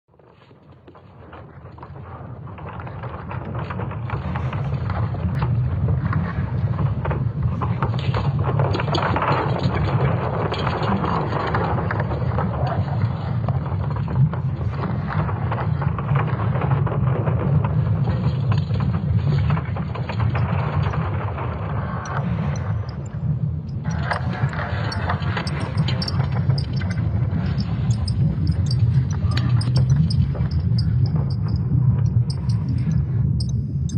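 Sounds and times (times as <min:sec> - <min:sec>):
deep rumbling drone: 0:13.0 - 0:33.9.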